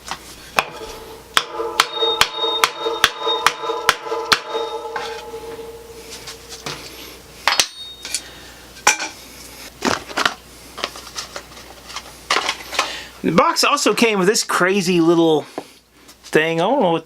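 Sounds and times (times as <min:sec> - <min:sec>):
hammer striking metal tool: 0:00.6 - 0:08.2.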